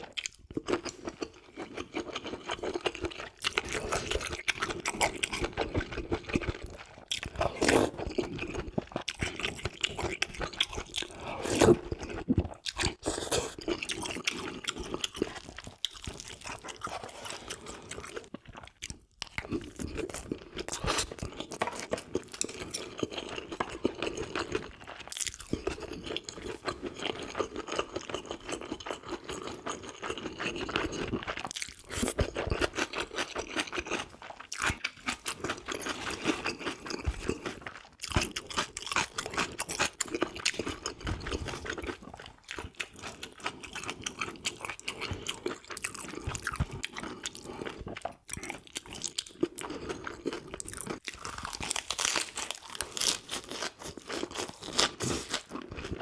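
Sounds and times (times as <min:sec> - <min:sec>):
person chewing and crunching food: 0:00.0 - 0:56.0.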